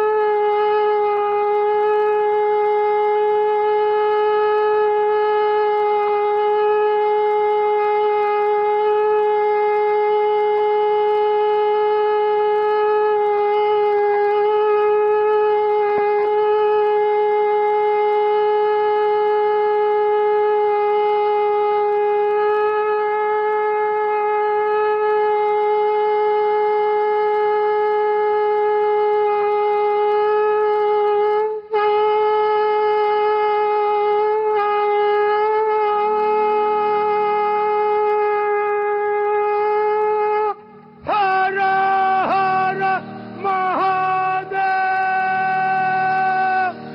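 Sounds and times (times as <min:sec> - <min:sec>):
conch shell blown: 0:00.0 - 0:46.9.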